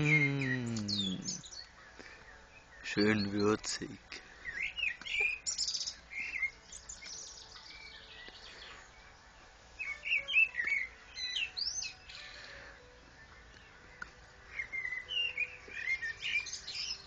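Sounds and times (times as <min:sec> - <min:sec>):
songbirds chirping: 0:00.0 - 0:17.0.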